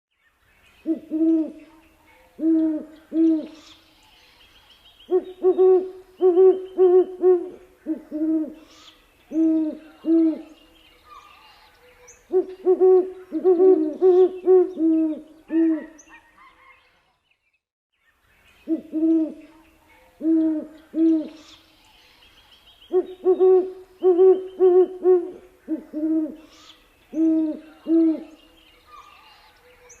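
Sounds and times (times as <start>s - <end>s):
owl hooting: 12.3s - 16.2s, 22.9s - 28.4s.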